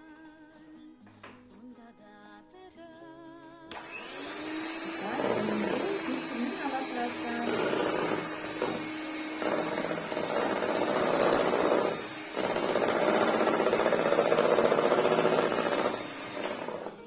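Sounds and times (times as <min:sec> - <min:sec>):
electric hand mixer running: 0:03.7 - 0:17.0.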